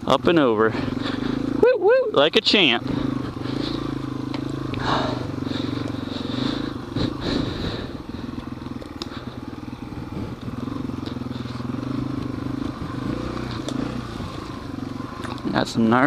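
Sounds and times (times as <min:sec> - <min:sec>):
motorcycle engine revving: 0:00.0 - 0:16.0
knocks and clatter from bike: 0:02.9 - 0:05.9, 0:07.0 - 0:15.6.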